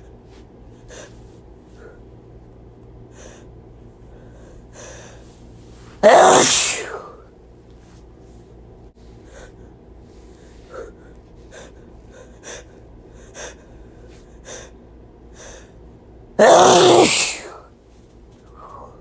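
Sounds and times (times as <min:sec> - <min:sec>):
person sneezing loudly: 0:06.0 - 0:07.2, 0:16.4 - 0:17.7.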